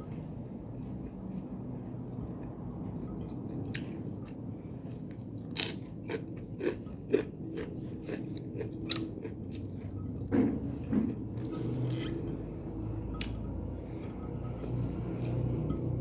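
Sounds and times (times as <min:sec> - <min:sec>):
person chewing crunchy food: 0:03.4 - 0:12.5.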